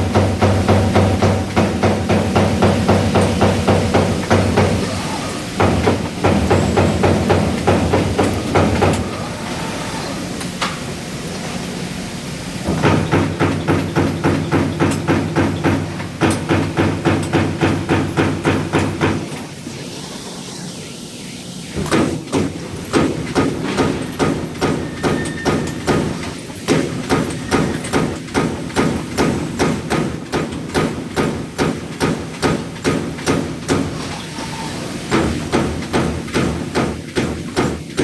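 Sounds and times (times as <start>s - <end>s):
punch press punching sheet metal: 0.0s - 9.2s, 12.7s - 19.4s, 21.8s - 34.1s.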